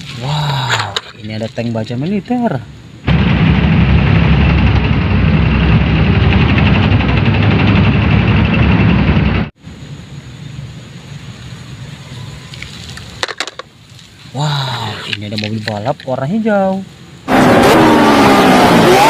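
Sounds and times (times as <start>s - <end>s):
steady background noise: 0.0s - 17.9s
tank engine noise: 2.6s - 13.8s, 16.9s - 19.0s.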